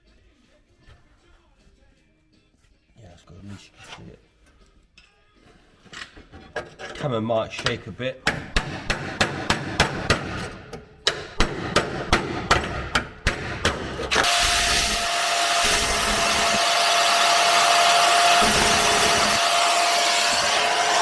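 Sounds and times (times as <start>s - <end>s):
hammer striking chisel on metal: 7.6s - 15.0s
power tool whining: 14.1s - 21.0s.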